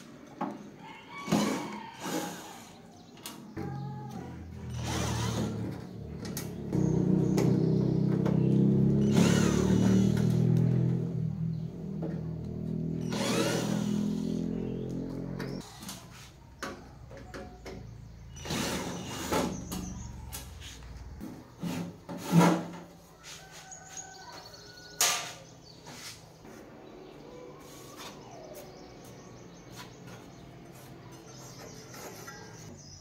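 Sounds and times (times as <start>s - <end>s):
faint bird chirps: 26.9s - 30.3s.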